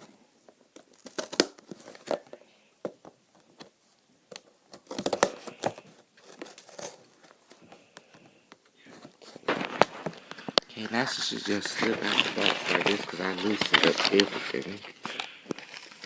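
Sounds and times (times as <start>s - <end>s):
packaging crinkling and tearing: 0.7s - 2.3s, 4.7s - 8.0s, 9.2s - 16.0s.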